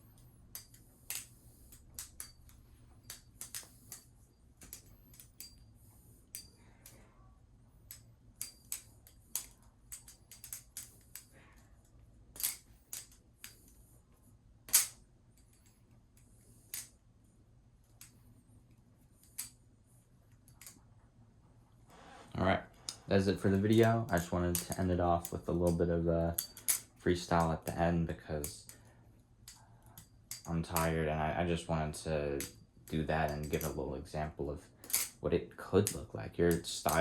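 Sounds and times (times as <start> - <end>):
butterfly knife clicking and clacking: 0.5 - 5.6, 7.9 - 11.3.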